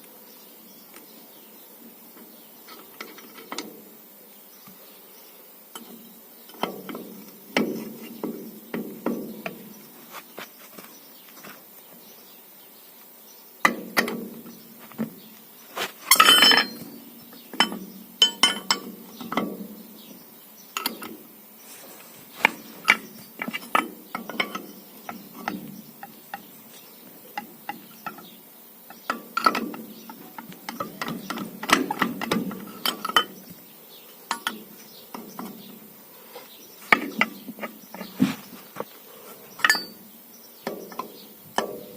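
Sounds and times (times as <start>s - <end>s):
clinks and knocks of hand tools: 16.0s - 19.7s, 20.8s - 21.2s, 22.4s - 33.6s, 34.2s - 35.9s, 39.6s - 40.0s, 40.6s - 41.9s.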